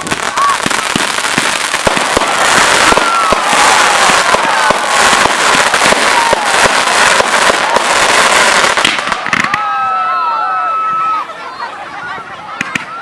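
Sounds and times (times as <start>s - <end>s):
firework bangs and crackling: 0.0s - 10.1s, 12.6s - 13.0s.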